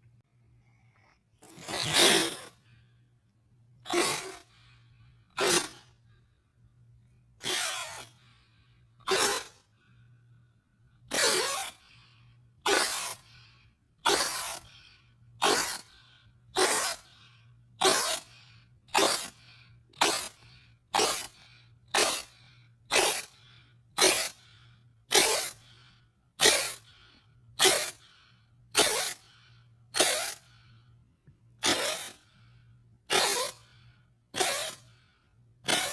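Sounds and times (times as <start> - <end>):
cat sneezing: 1.4 - 2.6, 3.8 - 4.5, 5.4 - 6.0, 7.4 - 8.1, 9.0 - 9.6, 11.1 - 11.8, 12.6 - 13.3, 14.0 - 14.7, 15.4 - 17.1, 17.8 - 18.3, 18.9 - 23.3, 24.0 - 24.4, 25.1 - 25.7, 26.4 - 27.0, 27.6 - 28.0, 28.7 - 29.2, 29.9 - 30.6, 31.6 - 32.2, 33.1 - 33.6, 34.3 - 34.9, 35.6 - 35.9.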